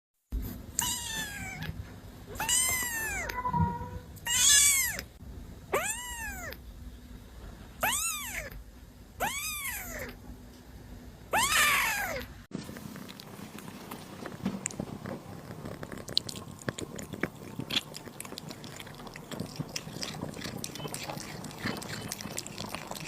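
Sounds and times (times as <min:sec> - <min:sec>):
kitten meowing: 0:00.8 - 0:05.1, 0:05.7 - 0:06.6, 0:07.8 - 0:08.6, 0:09.2 - 0:10.2, 0:11.3 - 0:12.3.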